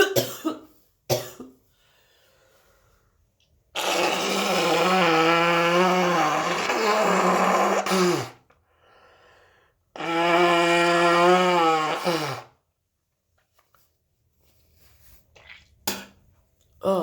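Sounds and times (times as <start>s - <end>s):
faint breathing: 1.7s - 3.2s, 8.6s - 9.9s
nose blowing: 3.7s - 8.6s, 9.9s - 12.7s.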